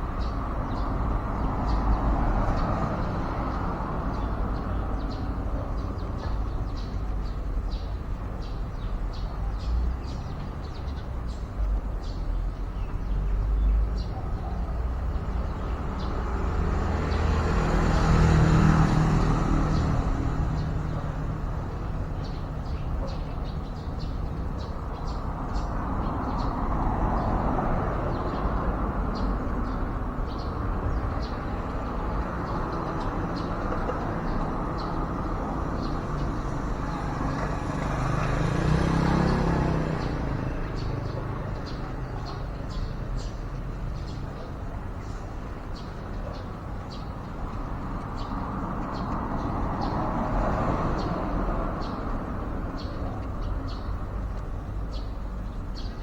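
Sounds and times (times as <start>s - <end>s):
road traffic: 0.0s - 56.0s
vehicle passing: 15.4s - 22.0s, 25.3s - 43.6s, 46.7s - 55.9s.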